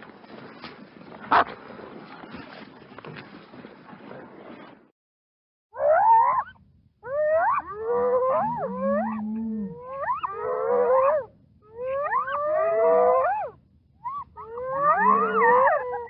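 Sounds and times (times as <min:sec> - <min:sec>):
hyenas calling: 0:05.8 - 0:16.0.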